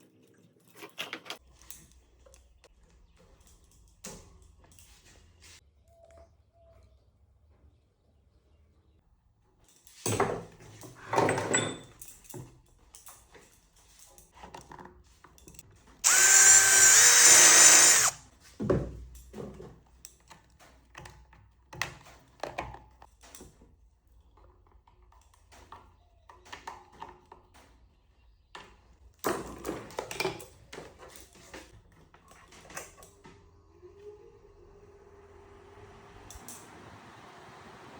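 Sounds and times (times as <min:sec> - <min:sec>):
small parts clicking: 0:15.5 - 0:18.2
low motor hum: 0:16.0 - 0:18.2
power tool whirring: 0:16.0 - 0:18.2.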